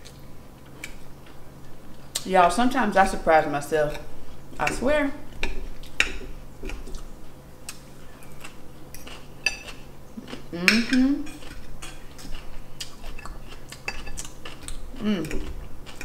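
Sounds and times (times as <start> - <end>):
person humming mmm: 10.2 - 11.4, 15.0 - 15.6
cutlery clinking on a plate: 13.9 - 14.2.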